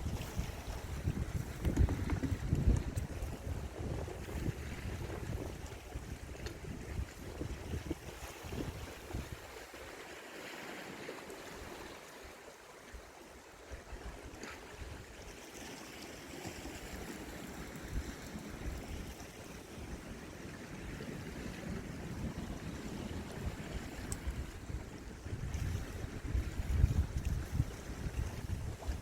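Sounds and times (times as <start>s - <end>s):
wind buffeting microphone: 0.0s - 9.8s, 16.6s - 29.0s
sea water washing: 0.0s - 29.0s.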